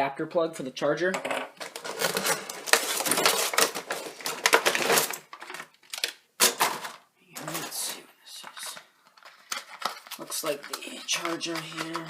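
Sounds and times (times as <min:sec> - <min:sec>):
packaging crackling and rustling: 0:01.6 - 0:12.0.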